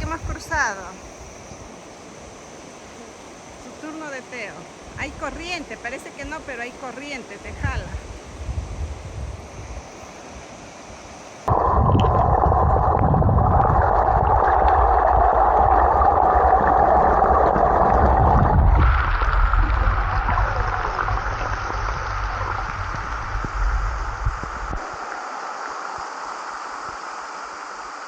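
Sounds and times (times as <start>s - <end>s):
river water rushing: 10.1s - 28.0s.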